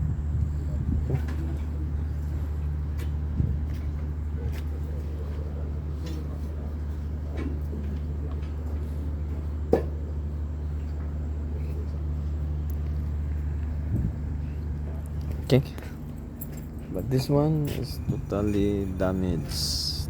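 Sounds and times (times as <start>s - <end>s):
low machinery hum: 0.0s - 20.0s.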